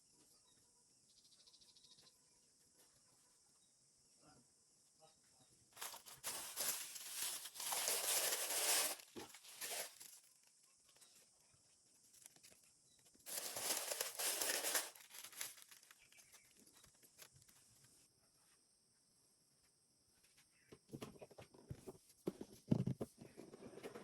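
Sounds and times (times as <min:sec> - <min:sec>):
packaging torn and crinkled: 0:05.8 - 0:10.2, 0:13.3 - 0:16.1.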